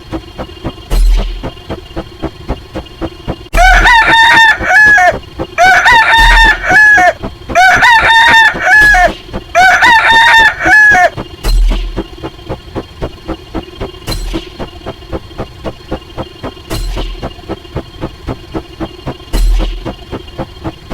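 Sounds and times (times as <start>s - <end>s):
background beat of ticks and thumps: 0.0s - 20.9s
rooster crowing: 3.6s - 11.2s.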